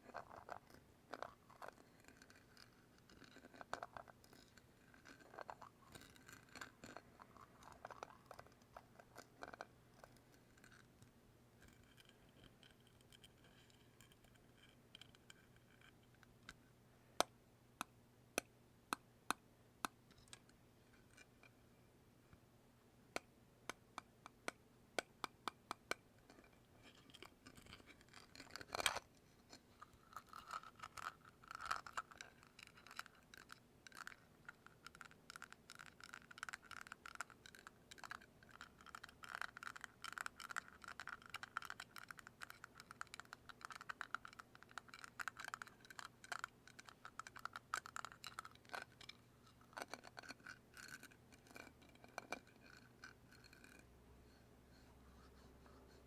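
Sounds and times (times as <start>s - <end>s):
faint scratching and brushing: 48.7s - 56.0s.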